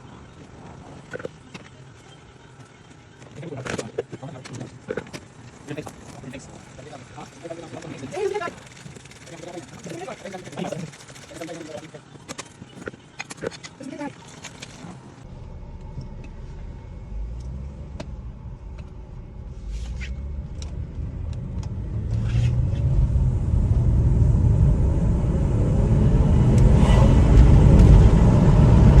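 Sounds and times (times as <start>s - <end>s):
car rumbling on the move: 15.2s - 29.0s.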